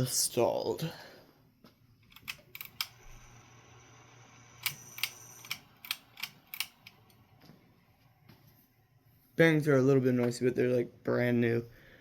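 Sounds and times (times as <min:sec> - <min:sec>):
sharp clicks: 0:02.0 - 0:03.2, 0:04.6 - 0:07.2
ceiling fan motor humming: 0:02.4 - 0:08.7.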